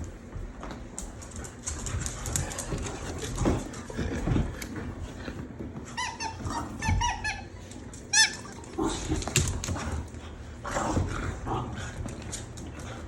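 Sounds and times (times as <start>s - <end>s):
dogs scuffling: 0.0s - 13.0s
puppy squealing: 5.9s - 8.8s.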